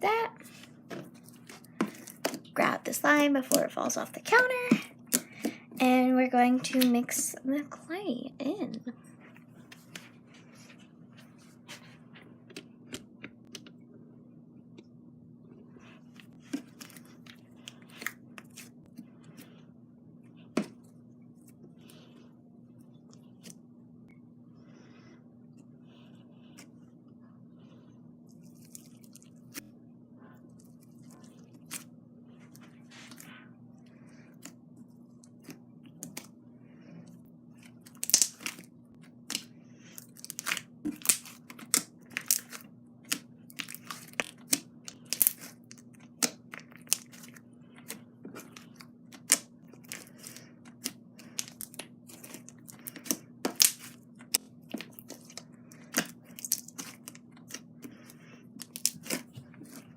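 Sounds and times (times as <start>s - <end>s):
slime kneaded by hand: 37.5s - 59.9s
wet sticky clicks and pops: 37.9s - 38.6s.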